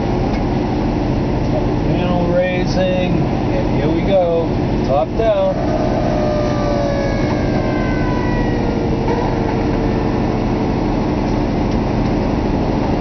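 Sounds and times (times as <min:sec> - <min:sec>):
hydraulic pump whine: 0:04.1 - 0:13.0.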